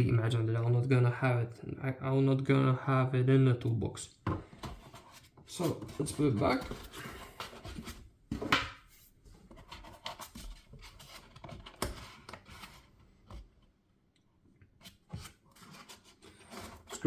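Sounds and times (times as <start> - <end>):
tools rubbing and scraping in foam: 4.6 - 8.0, 14.8 - 17.0.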